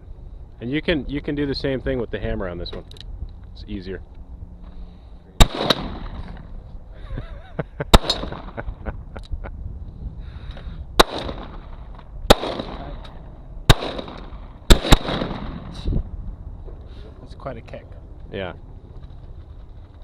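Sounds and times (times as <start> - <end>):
revolver gunshots: 5.4 - 6.6, 7.9 - 8.8, 11.0 - 15.9.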